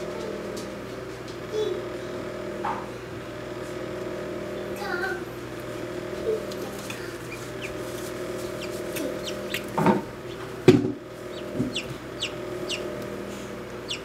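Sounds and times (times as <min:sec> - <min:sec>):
steady low hum: 0:00.0 - 0:14.0
chicks peeping: 0:06.7 - 0:14.0.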